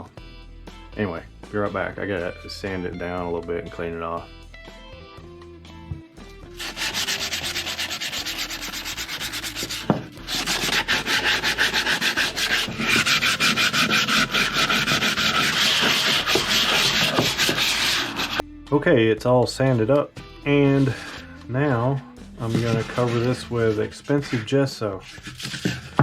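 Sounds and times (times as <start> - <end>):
sanding gourd shell: 6.6 - 18.4, 22.4 - 26.0.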